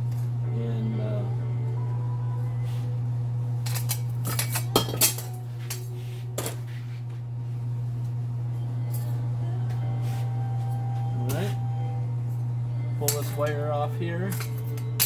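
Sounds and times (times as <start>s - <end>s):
steady low hum: 0.0s - 15.0s
metal clinking and clanking: 3.6s - 6.6s, 13.0s - 13.6s, 14.3s - 15.0s.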